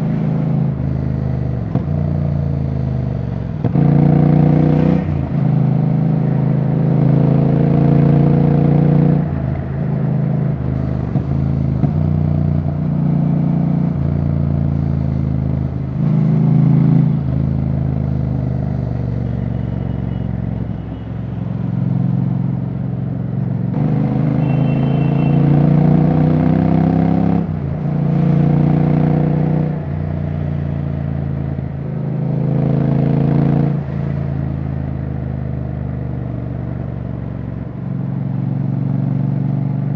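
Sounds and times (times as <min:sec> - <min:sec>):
motorcycle engine revving: 0:03.6 - 0:09.2, 0:23.7 - 0:29.8.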